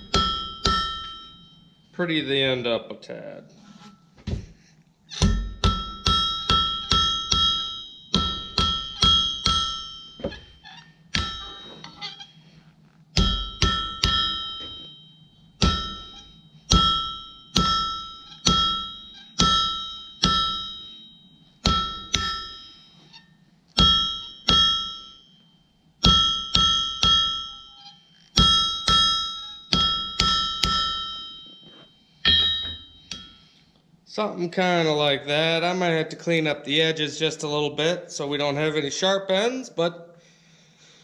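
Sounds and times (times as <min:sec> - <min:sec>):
hammer ringing on anvil: 0:00.0 - 0:02.4, 0:05.1 - 0:12.4, 0:13.2 - 0:33.7.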